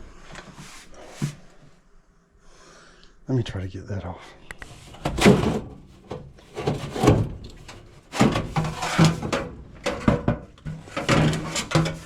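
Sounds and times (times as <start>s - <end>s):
part clattering and scraping: 4.7s - 12.0s.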